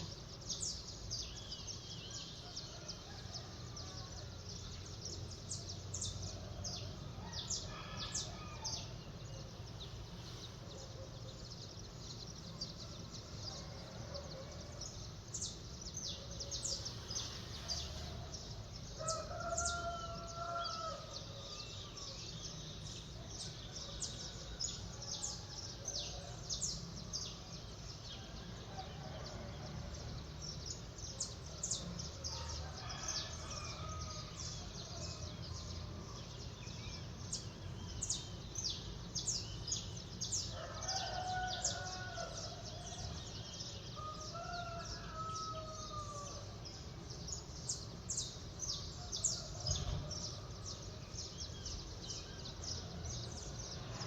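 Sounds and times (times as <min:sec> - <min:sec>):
low city background hum: 0:00.0 - 0:54.0
rooster crowing: 0:07.2 - 0:09.0, 0:19.0 - 0:22.1, 0:40.5 - 0:43.0, 0:44.0 - 0:46.4.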